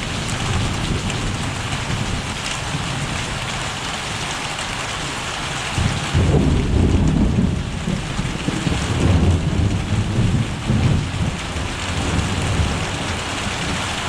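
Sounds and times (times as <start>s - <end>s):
steady rain falling: 0.0s - 14.0s
thunder rumbling: 5.8s - 14.0s.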